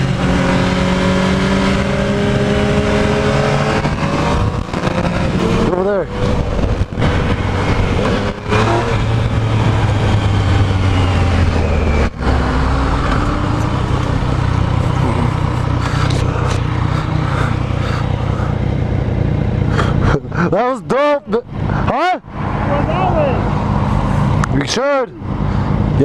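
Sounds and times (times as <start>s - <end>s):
wind rush: 0.0s - 18.6s
motorcycle engine running: 0.0s - 20.5s.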